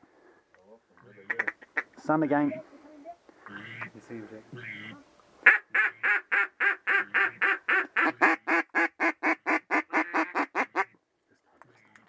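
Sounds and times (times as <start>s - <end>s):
duck call quacking: 1.3s - 2.0s, 3.5s - 3.9s, 4.6s - 11.0s.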